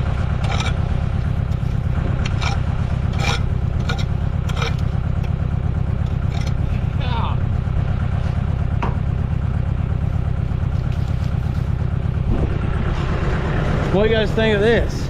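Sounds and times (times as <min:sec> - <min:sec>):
engine idling hum: 0:00.0 - 0:15.0
concrete blocks scraping and knocking: 0:00.3 - 0:07.0.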